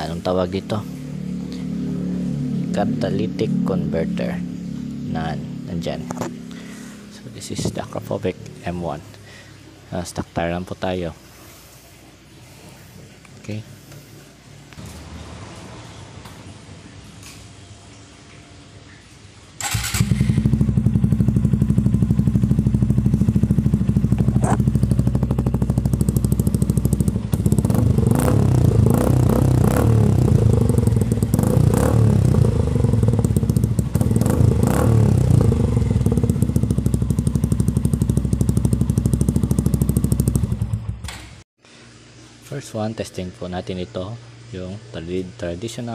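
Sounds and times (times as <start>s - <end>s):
motorcycle engine idling and revving: 0.0s - 9.7s, 19.6s - 41.5s.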